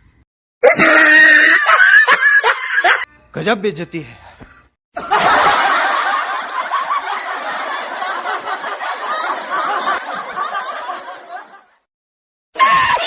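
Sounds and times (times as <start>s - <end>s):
people laughing and snickering: 0.8s - 3.1s, 5.0s - 11.8s.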